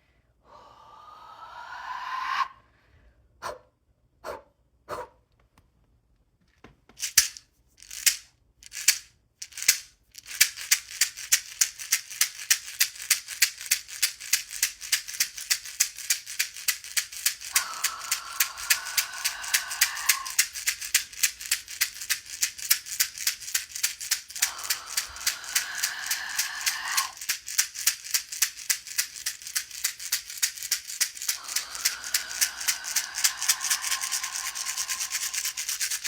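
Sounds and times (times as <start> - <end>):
breathy rising tone: 0.5 - 2.8, 17.5 - 20.4, 24.4 - 27.2, 31.4 - 36.0
hand rattle shaking: 7.0 - 36.0.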